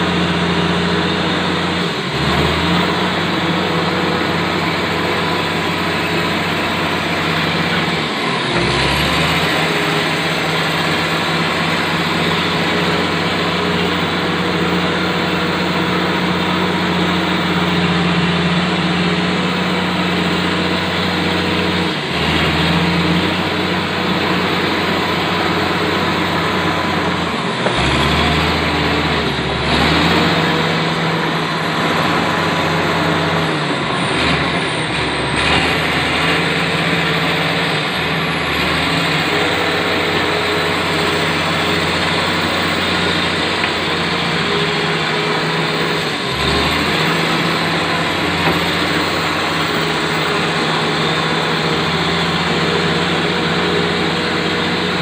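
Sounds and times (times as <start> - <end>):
bulldozer diesel engine: 0.0 - 55.0.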